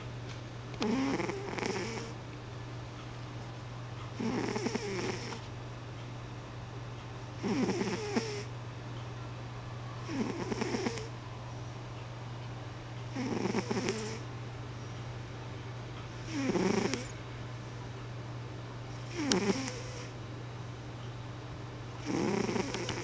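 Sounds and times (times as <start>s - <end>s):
steady low hum: 0.0s - 23.0s
pet snoring: 0.8s - 2.2s, 4.2s - 5.4s, 7.4s - 8.5s, 10.0s - 11.1s, 13.1s - 14.2s, 16.1s - 17.2s, 18.9s - 20.2s, 22.0s - 23.0s.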